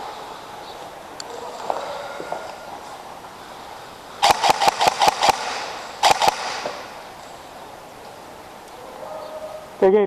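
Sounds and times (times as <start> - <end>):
airsoft gun shots: 4.2 - 7.2.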